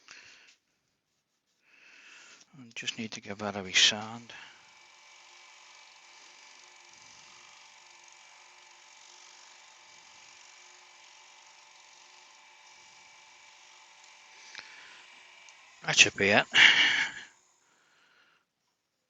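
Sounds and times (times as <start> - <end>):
thin high whine: 2.2 - 18.1
faint hum and hiss: 15.8 - 19.0.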